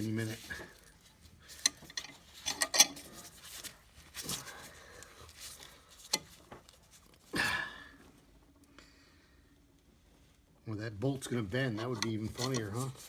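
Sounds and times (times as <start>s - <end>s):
metal clamp clicking and clinking: 1.5s - 3.2s, 11.8s - 13.0s
metal scraping rasps: 1.5s - 3.6s, 11.6s - 13.0s.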